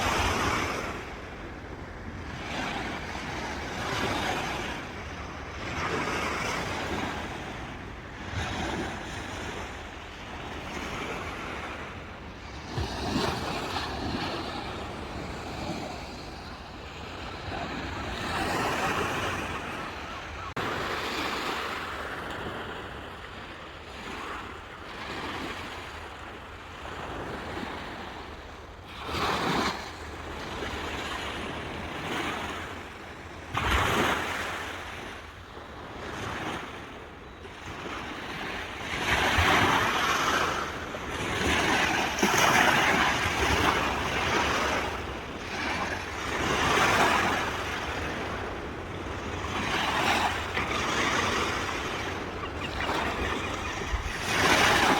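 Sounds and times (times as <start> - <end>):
sea waves breaking on shore: 0.0 - 54.9
light wind on microphone: 38.0 - 54.9.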